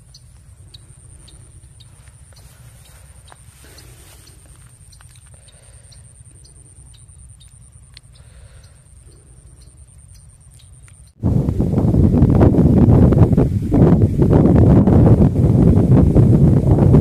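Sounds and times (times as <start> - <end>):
wind noise on microphone: 10.2 - 17.0.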